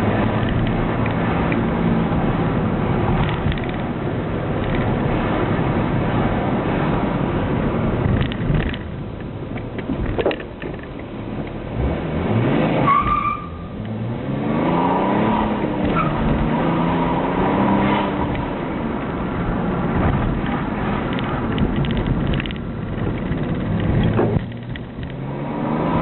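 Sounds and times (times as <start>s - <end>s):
diesel car engine revving: 11.0s - 26.0s.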